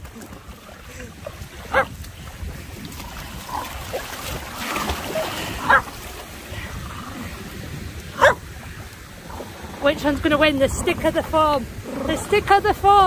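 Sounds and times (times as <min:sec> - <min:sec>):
rushing river water: 0:00.0 - 0:13.0
dog barking: 0:01.7 - 0:01.9, 0:05.6 - 0:05.9, 0:08.2 - 0:08.4.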